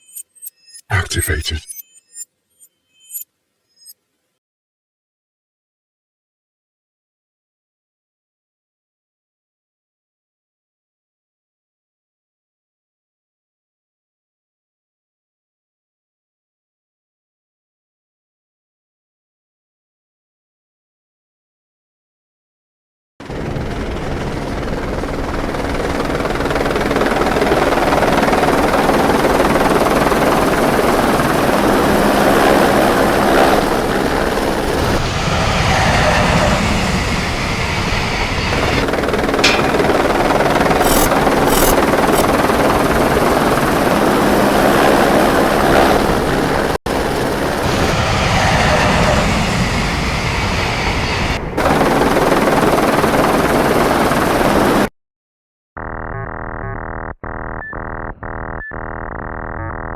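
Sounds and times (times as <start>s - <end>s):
short sharp clicks: 40.8s - 42.3s
rumbling mechanical drone: 55.8s - 59.9s.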